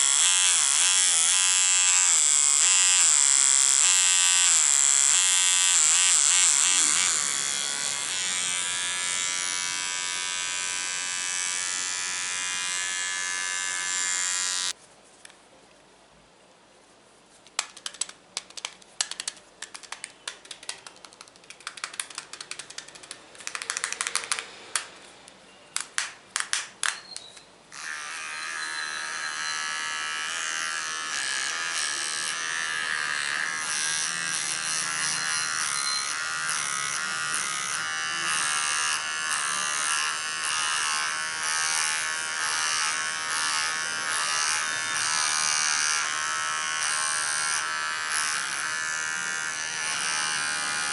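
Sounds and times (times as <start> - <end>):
electric trimmer buzzing: 0.0 - 14.8, 27.7 - 50.9
clicks and taps: 17.5 - 24.9, 25.8 - 27.3.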